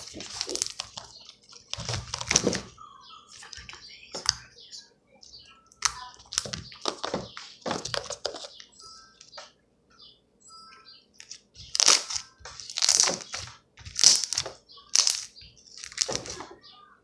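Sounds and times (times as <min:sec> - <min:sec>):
wet crackling squishes: 0:00.0 - 0:04.4, 0:11.2 - 0:16.6
slime squeezed with crackles: 0:11.6 - 0:16.4.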